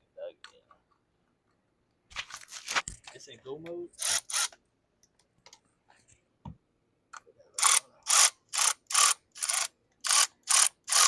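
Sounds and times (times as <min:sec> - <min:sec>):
socket ratchet clicking: 0:07.6 - 0:11.0.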